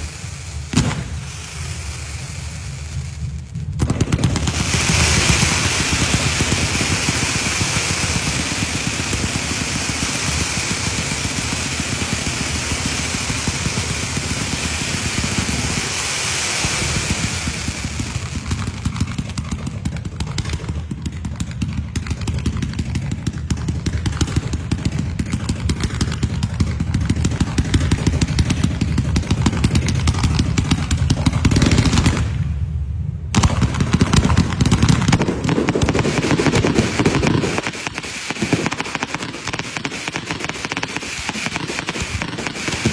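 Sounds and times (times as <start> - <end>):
hiss: 0.0 - 3.2, 4.4 - 19.6, 36.1 - 42.9
firecrackers crackling: 0.0 - 32.6, 33.3 - 42.9.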